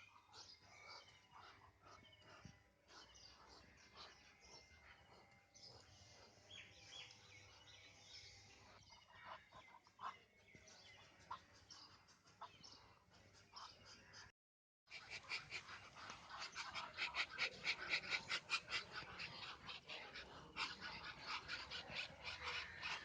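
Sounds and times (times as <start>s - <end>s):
faint bird chirps: 0.0s - 14.3s.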